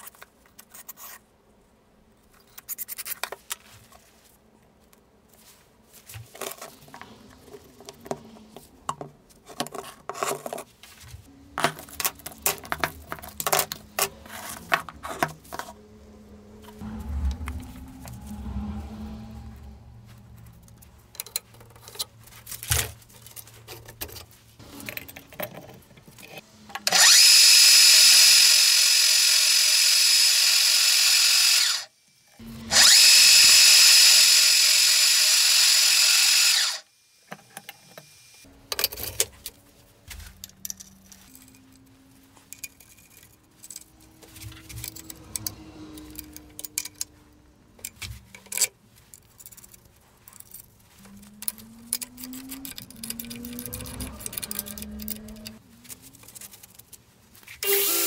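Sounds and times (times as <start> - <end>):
power drill running: 26.8 - 36.9, 57.6 - 58.0
handling clicks and knocks: 47.8 - 57.0.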